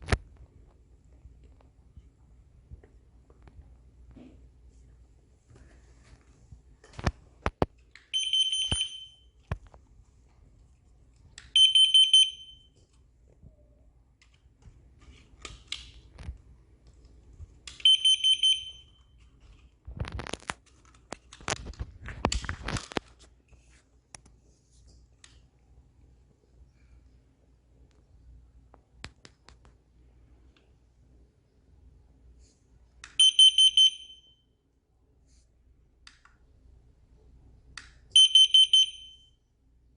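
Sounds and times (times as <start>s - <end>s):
rustling or crackling: 19.1s - 25.1s.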